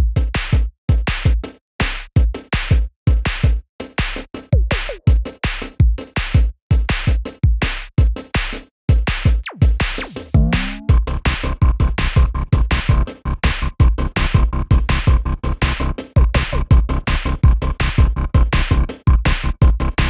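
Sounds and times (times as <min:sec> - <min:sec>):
electronic beat music: 0:03.4 - 0:06.4, 0:08.2 - 0:20.0.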